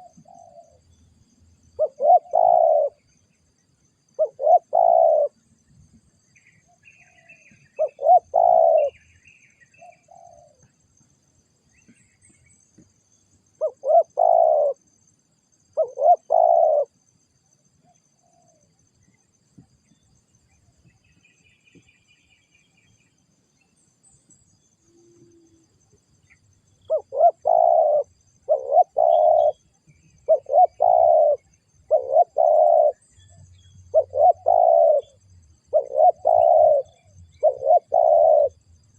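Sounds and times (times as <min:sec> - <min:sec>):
doves cooing: 0:00.0 - 0:00.8, 0:01.8 - 0:03.0, 0:04.2 - 0:05.4, 0:07.0 - 0:09.0, 0:09.8 - 0:10.6, 0:13.6 - 0:14.8, 0:15.8 - 0:16.9, 0:26.8 - 0:29.6, 0:30.2 - 0:38.7
small birds chirping: 0:00.0 - 0:15.1, 0:15.7 - 0:16.9, 0:17.8 - 0:38.9.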